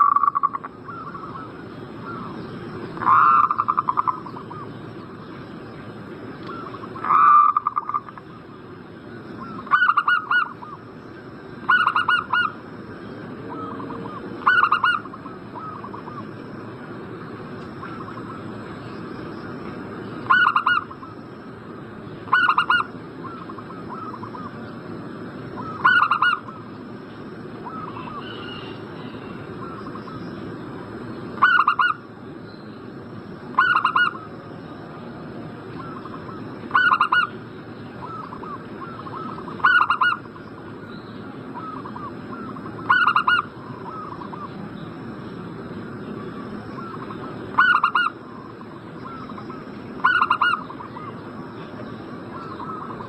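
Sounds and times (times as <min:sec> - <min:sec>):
dove cooing: 0:00.0 - 0:02.3, 0:03.0 - 0:04.6, 0:09.4 - 0:10.8, 0:13.5 - 0:16.3, 0:20.3 - 0:21.1, 0:22.3 - 0:24.5, 0:25.6 - 0:26.6, 0:27.6 - 0:30.1, 0:31.4 - 0:32.0, 0:33.5 - 0:34.3, 0:35.8 - 0:37.4, 0:38.0 - 0:40.2, 0:41.6 - 0:44.6, 0:46.6 - 0:51.2, 0:52.3 - 0:53.0.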